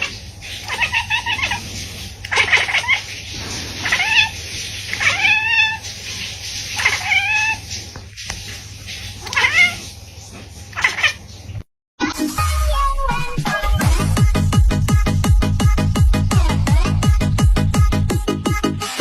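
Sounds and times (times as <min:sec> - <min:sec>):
cat meowing: 0:00.0 - 0:05.9, 0:06.7 - 0:07.6, 0:09.2 - 0:09.9, 0:10.7 - 0:11.2, 0:16.3 - 0:17.0.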